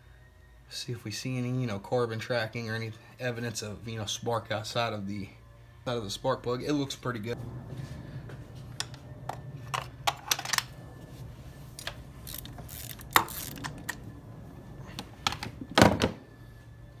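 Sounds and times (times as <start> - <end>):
steady low hum: 2.4 - 17.0
metallic clicks and clinks: 11.8 - 14.0.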